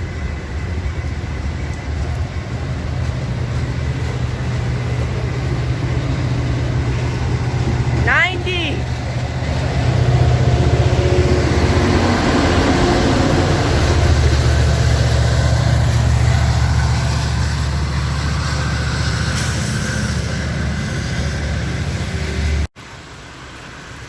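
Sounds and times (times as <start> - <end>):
diesel locomotive engine drone: 0.0 - 24.0.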